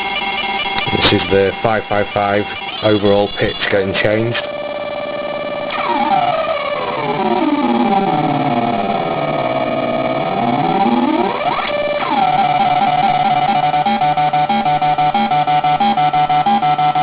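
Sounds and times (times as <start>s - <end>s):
harsh ring-modulated synth tone: 0.0s - 17.0s.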